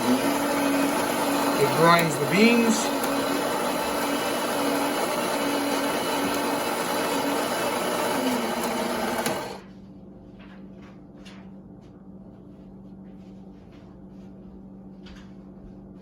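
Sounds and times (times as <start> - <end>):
coffee grinder whirring: 0.0 - 9.7.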